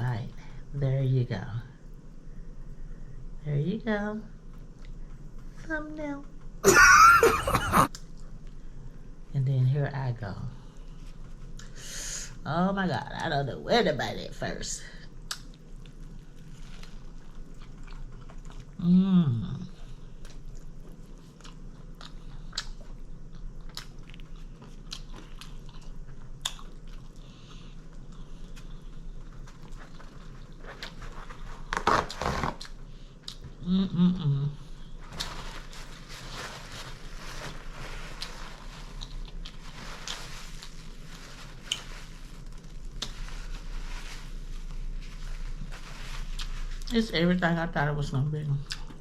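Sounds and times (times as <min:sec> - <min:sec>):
chewing crispy food: 0:15.0 - 0:33.6, 0:34.6 - 0:47.1, 0:48.6 - 0:49.0.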